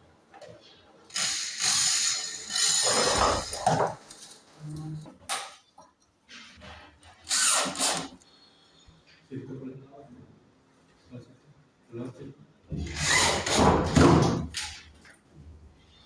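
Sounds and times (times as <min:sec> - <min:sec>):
power drill running: 0:01.1 - 0:03.7, 0:07.3 - 0:08.2.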